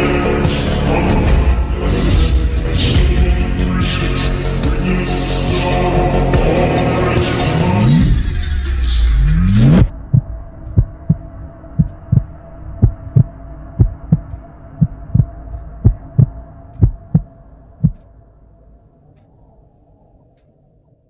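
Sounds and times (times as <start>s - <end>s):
heartbeat thumps: 9.7s - 18.1s
steady hum: 9.8s - 20.2s.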